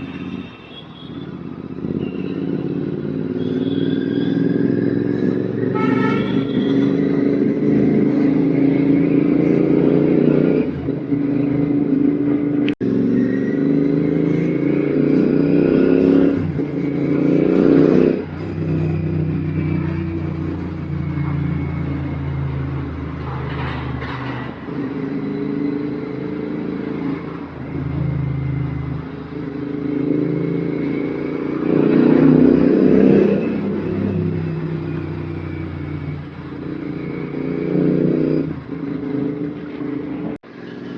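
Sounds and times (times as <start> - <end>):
motorcycle engine revving: 1.2 - 40.9.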